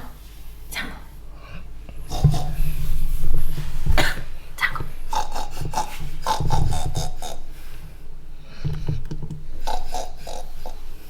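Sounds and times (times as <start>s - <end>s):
dog snoring with rough snorts: 5.1s - 7.8s, 8.4s - 11.0s.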